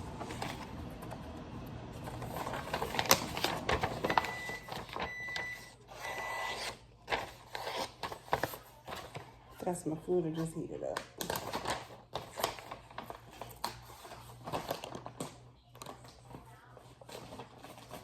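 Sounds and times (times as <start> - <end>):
microwave oven humming: 0.0 - 7.0.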